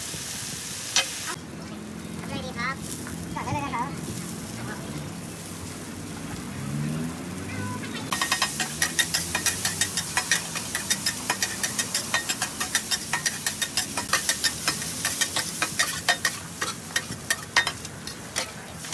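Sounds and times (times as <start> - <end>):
food sizzling in oil: 0.0 - 1.4, 3.9 - 18.9
metal spatula scraping a wok: 8.1 - 18.9.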